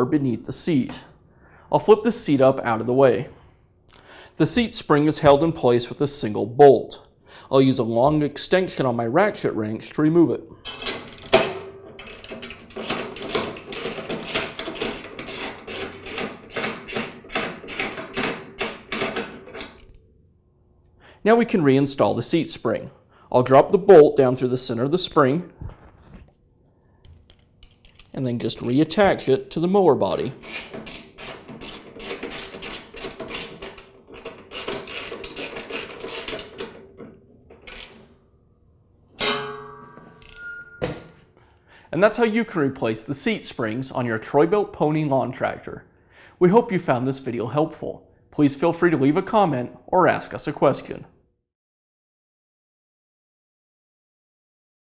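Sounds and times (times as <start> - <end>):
ratchet wrench clicking: 12.0 - 19.2, 30.4 - 36.5
loud metallic clank: 39.2 - 41.0.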